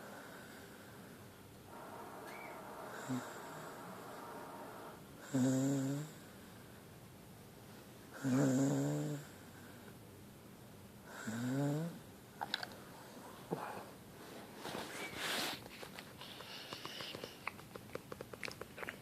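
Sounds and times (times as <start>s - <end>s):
dog snoring: 2.2s - 3.8s, 5.2s - 6.2s, 8.2s - 9.4s, 11.1s - 12.0s.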